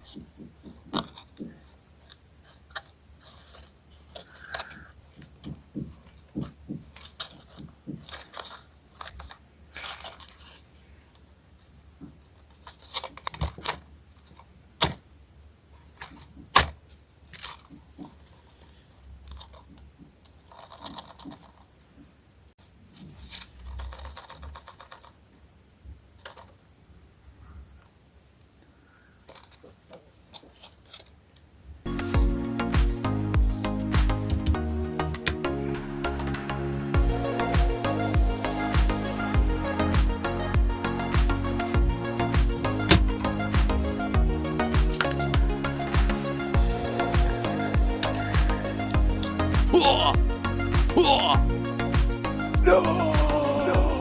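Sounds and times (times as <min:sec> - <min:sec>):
paper rustling and crinkling: 0:00.0 - 0:15.1, 0:15.7 - 0:25.3, 0:29.2 - 0:36.2, 0:41.0 - 0:49.7.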